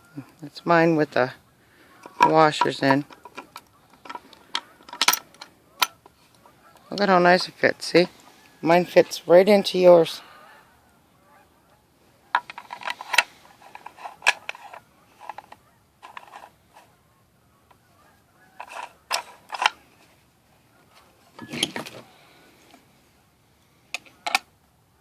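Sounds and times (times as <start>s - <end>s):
metal grinder parts clinking: 2.0s - 6.0s, 12.4s - 16.8s, 18.6s - 19.8s.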